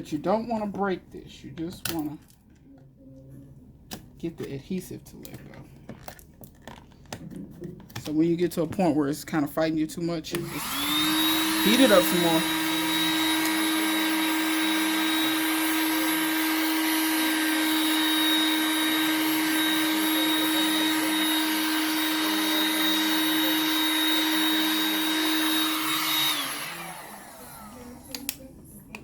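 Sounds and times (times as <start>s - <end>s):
fan winding down: 10.3s - 28.4s
heat gun motor whine: 10.3s - 28.4s.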